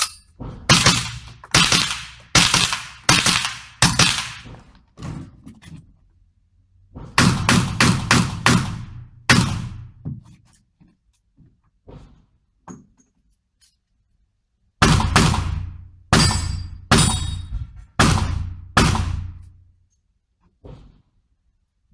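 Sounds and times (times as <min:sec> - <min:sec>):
revolver gunshots: 0:00.7 - 0:04.6, 0:18.0 - 0:19.4.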